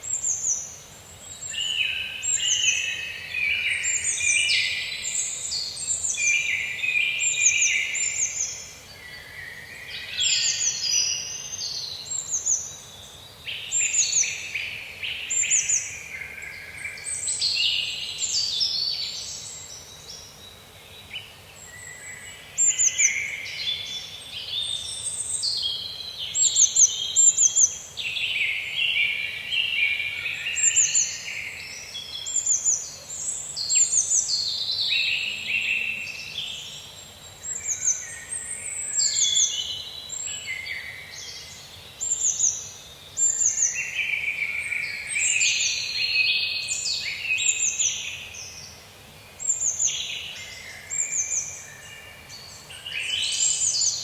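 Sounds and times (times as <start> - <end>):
songbirds singing and calling: 0.0 - 54.0.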